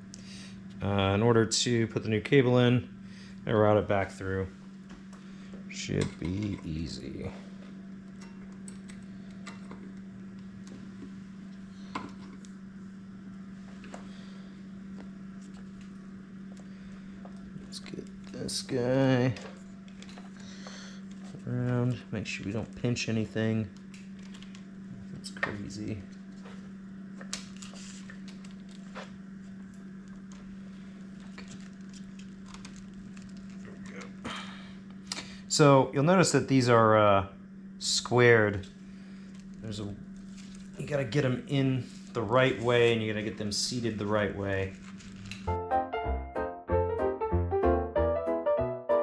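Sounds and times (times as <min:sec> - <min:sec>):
steady low hum: 0:00.0 - 0:45.7
clicks and rustles of handling: 0:31.1 - 0:34.2.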